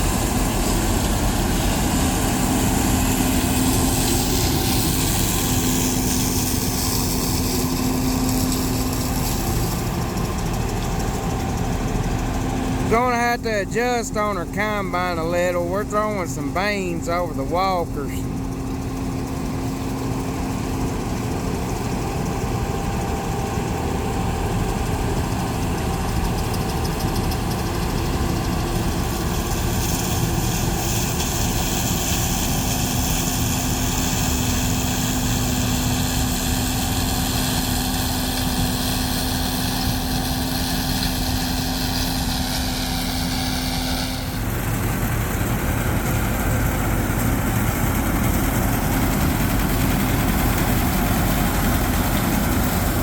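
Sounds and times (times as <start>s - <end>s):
combine harvester engine rumble: 0.0s - 53.0s
steady machine whine: 0.0s - 53.0s.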